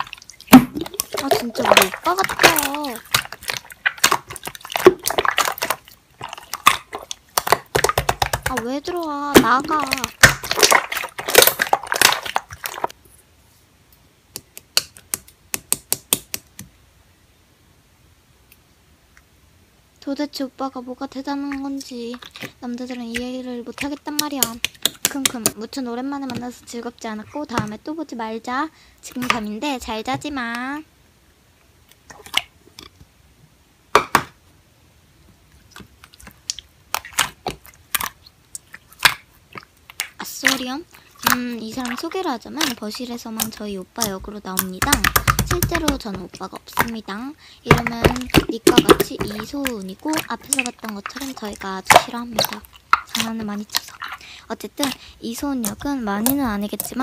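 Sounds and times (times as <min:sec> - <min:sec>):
dense crackling noise: 0:00.0 - 0:13.6, 0:34.4 - 0:57.0
slime sticky pops: 0:36.4 - 0:39.3, 0:43.4 - 0:47.0.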